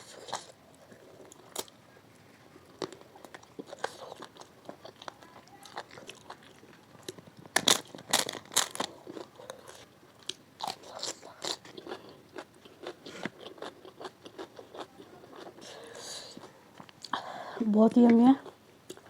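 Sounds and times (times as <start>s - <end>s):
person chewing crisp food: 0.0s - 1.8s, 2.7s - 17.2s, 18.4s - 19.0s.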